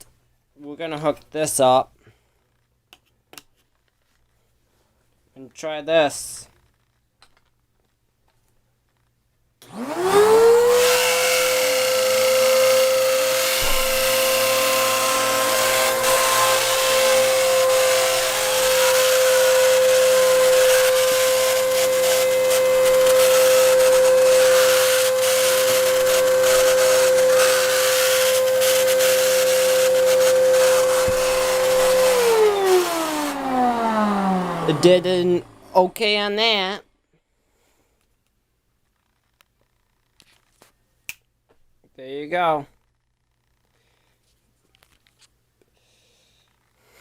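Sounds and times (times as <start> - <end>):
vacuum cleaner whine: 9.6 - 36.0.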